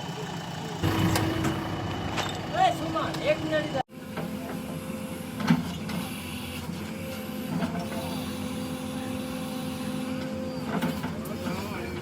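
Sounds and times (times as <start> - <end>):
diesel engine running: 0.0 - 5.5.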